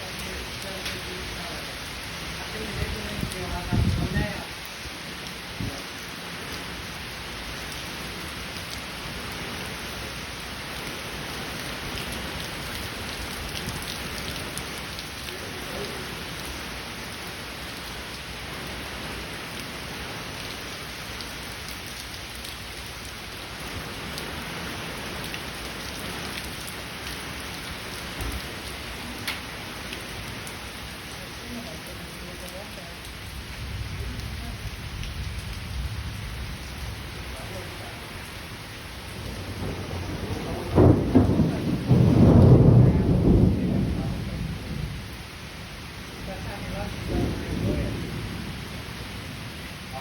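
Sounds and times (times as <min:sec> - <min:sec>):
raindrop hits: 0:00.0 - 0:06.0, 0:07.6 - 0:50.0
heavy rain: 0:00.0 - 0:50.0.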